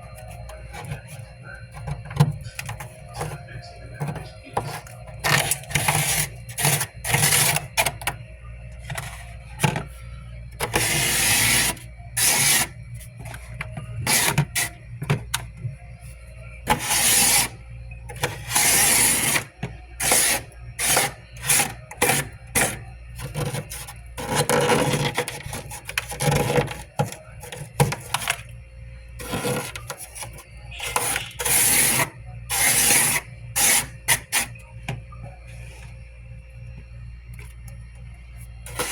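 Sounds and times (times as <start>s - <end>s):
frost being scraped: 0.1s - 7.8s, 10.6s - 15.4s, 16.7s - 17.6s, 29.2s - 34.6s.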